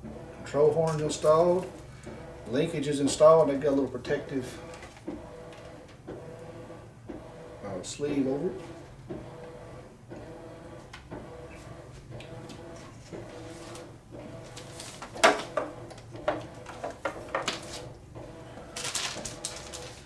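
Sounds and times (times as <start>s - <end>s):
packaging rustling: 16.6s - 18.0s, 18.6s - 20.0s.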